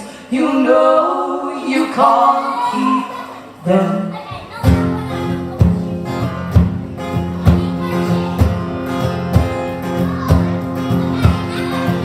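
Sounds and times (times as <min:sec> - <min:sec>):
acoustic guitars strummed: 0:04.6 - 0:12.0.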